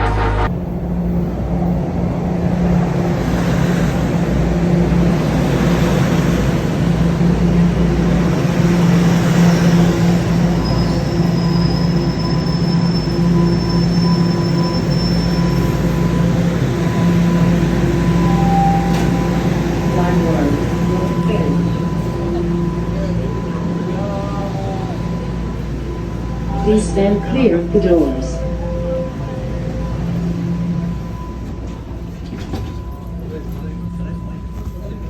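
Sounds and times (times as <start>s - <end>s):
subway train rumble: 0.0s - 35.0s
high wheel squeal: 9.4s - 23.3s.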